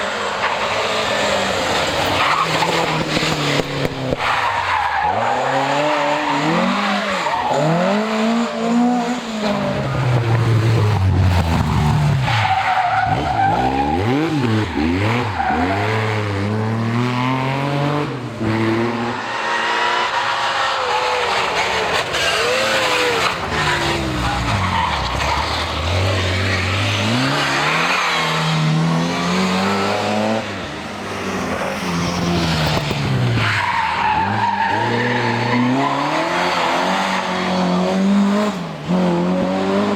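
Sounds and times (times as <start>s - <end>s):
tyre noise on road surface: 0.0s - 8.8s, 18.9s - 37.5s
rally car engines revving: 0.0s - 39.9s.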